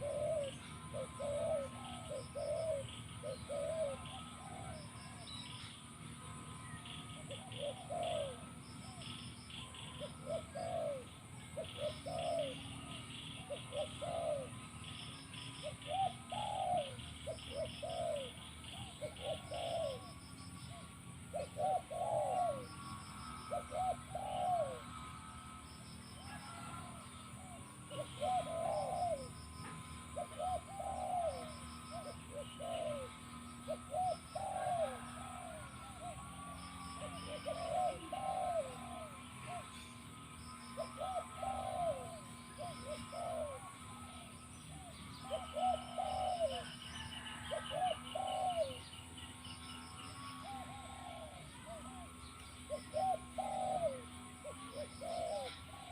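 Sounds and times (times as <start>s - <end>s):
small birds chirping: 0.0s - 26.8s, 27.4s - 55.9s
dove cooing: 0.0s - 55.9s
high bird trill: 0.0s - 55.9s.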